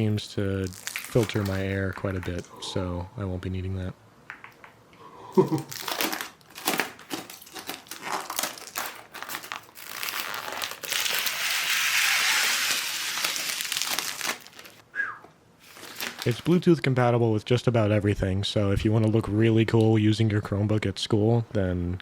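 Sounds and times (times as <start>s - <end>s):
packaging crinkling: 0.0s - 2.5s, 5.4s - 14.8s, 15.6s - 16.6s.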